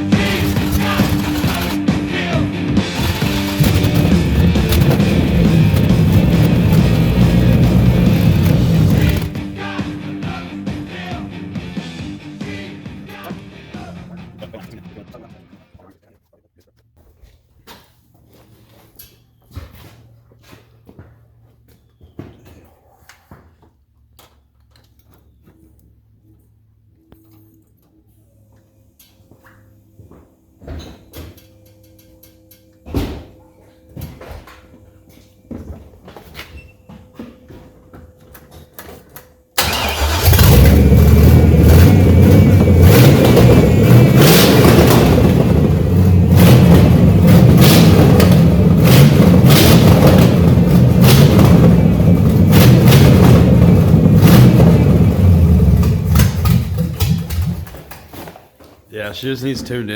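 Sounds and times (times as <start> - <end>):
car engine starting and revving: 0.0 - 14.8, 39.6 - 58.0.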